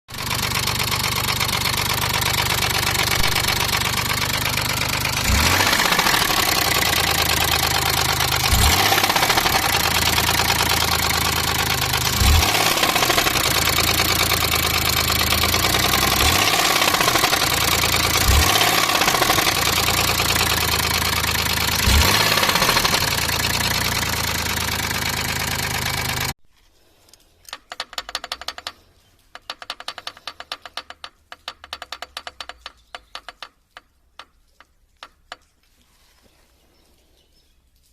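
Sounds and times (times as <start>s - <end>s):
car engine knocking and revving: 0.1s - 26.4s
faint rapid clicking: 27.0s - 35.6s.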